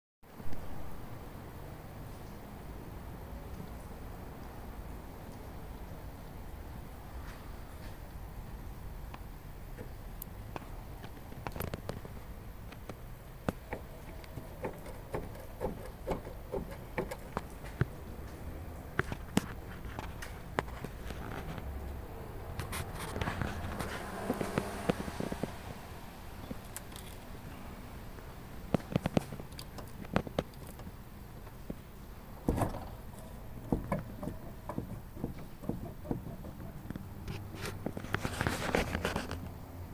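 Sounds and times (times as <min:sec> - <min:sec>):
light knocks and clicks: 0:09.1 - 0:21.7, 0:32.4 - 0:39.6.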